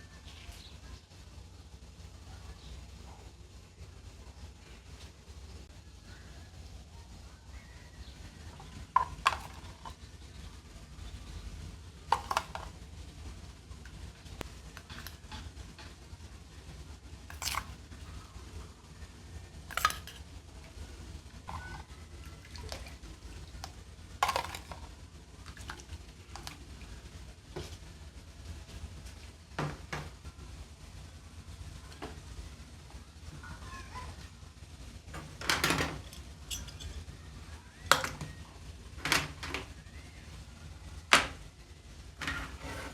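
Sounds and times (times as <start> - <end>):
steady low hum: 0.0 - 42.9
metal parts clinking: 35.4 - 37.0.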